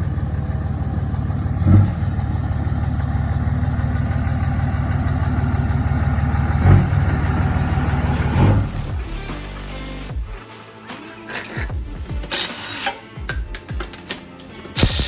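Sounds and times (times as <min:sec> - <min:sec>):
vehicle engine while driving: 0:00.0 - 0:10.1.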